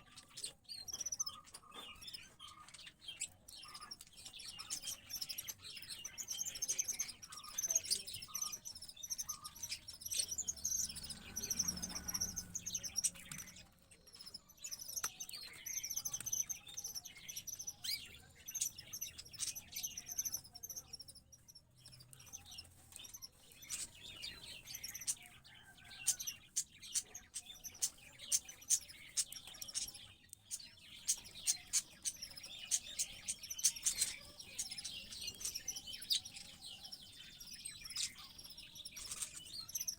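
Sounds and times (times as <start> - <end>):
small birds chirping: 0.0 - 39.9
chick cheeping: 6.2 - 13.8.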